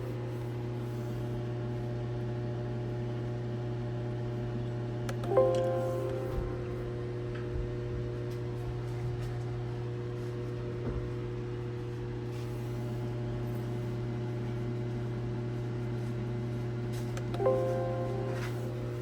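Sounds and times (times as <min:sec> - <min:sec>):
steady low hum: 0:05.2 - 0:07.6
guitar chord ringing: 0:05.3 - 0:07.2, 0:17.4 - 0:19.0.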